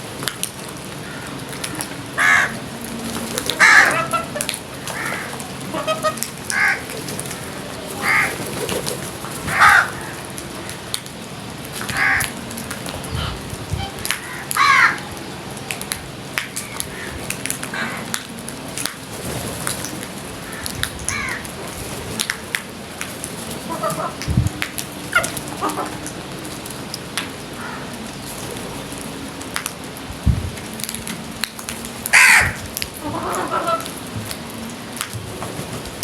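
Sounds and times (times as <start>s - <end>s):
crows cawing: 1.0s - 2.6s, 3.6s - 8.4s, 9.5s - 10.8s, 11.9s - 12.4s, 14.2s - 15.0s, 20.4s - 21.5s, 27.6s - 28.0s, 32.1s - 32.6s.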